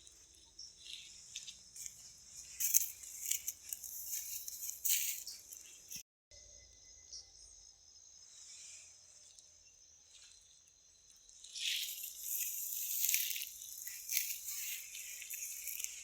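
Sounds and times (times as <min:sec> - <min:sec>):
rustling noise: 0:00.0 - 0:06.0, 0:11.7 - 0:16.0
insects chirring: 0:00.0 - 0:16.0.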